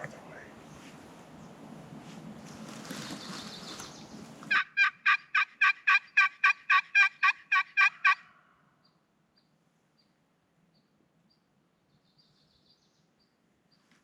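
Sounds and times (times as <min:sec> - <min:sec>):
turkey yelping: 0:04.5 - 0:08.5.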